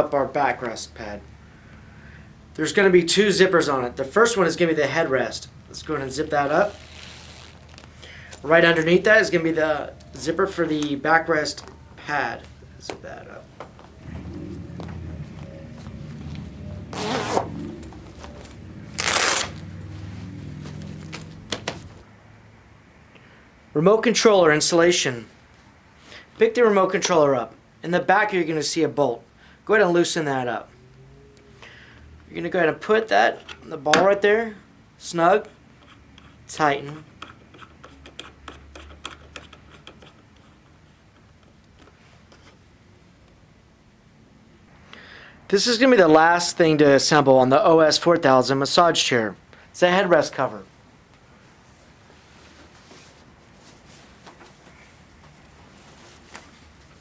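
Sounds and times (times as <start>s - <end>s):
fabric rustling: 6.3s - 10.8s, 13.4s - 22.1s, 51.4s - 57.0s
zipper rasp: 15.7s - 21.3s.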